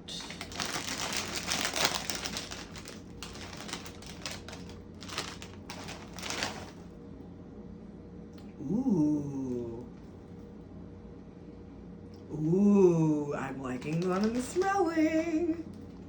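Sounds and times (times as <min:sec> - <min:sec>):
foil snack bag crinkling: 0:00.0 - 0:07.0, 0:13.7 - 0:15.2.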